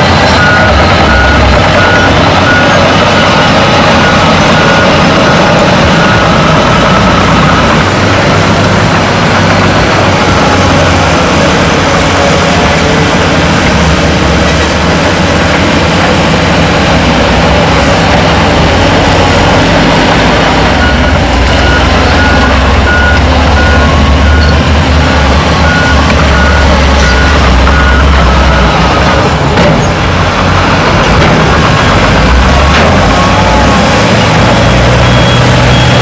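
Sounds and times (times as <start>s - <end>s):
diesel machinery engine running: 0.0s - 36.0s
reversing alarm beeping: 0.2s - 9.0s, 16.9s - 29.1s, 33.0s - 36.0s.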